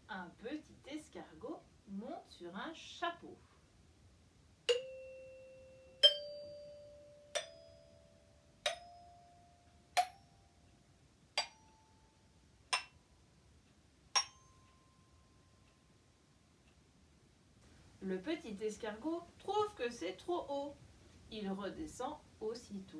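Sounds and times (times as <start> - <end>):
resonator bars ringing notes: 4.7 - 10.7, 11.4 - 13.0.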